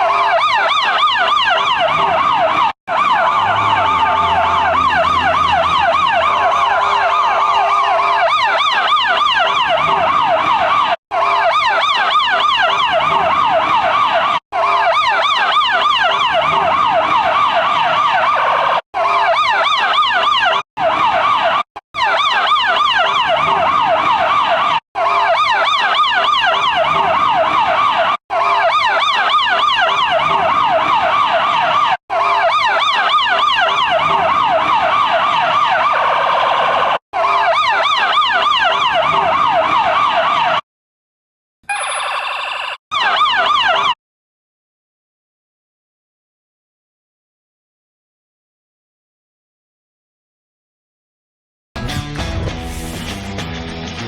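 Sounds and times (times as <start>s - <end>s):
electronic siren yelp and phaser: 0.0s - 40.6s, 41.7s - 44.0s.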